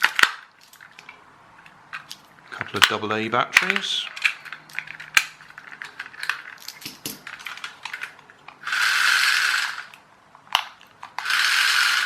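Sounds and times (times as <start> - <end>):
toy car motor whirring: 8.6 - 10.0, 11.1 - 12.0.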